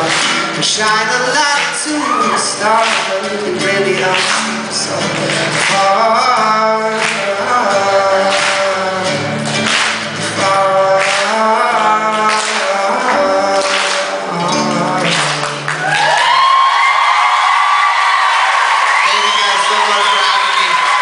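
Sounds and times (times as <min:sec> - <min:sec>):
strummed acoustic guitar: 0:00.0 - 0:15.7
man singing slow song: 0:00.0 - 0:15.9
long rising held whoop: 0:02.0 - 0:02.5, 0:15.8 - 0:19.2.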